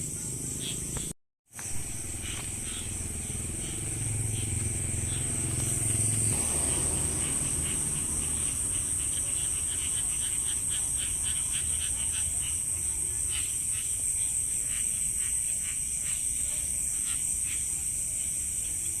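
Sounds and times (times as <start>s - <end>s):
frogs and crickets chirping: 0.0s - 19.0s
high insect trill: 0.0s - 19.0s
low hum: 1.6s - 10.2s.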